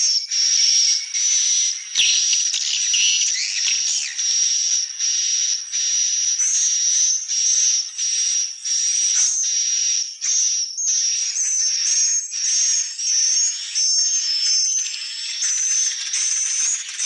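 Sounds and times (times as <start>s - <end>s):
raspy bird chirps: 0.3s - 4.5s.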